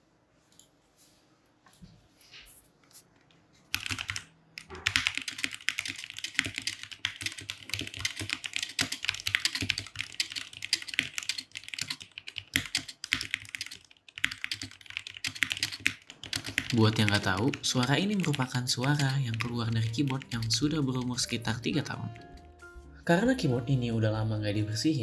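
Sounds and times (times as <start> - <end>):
mechanical keyboard typing: 3.7 - 22.6.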